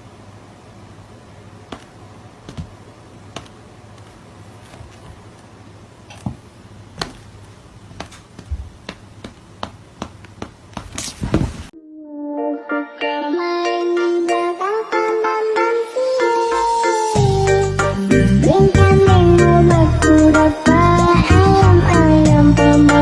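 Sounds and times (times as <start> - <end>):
steady low hum: 0.0 - 11.8.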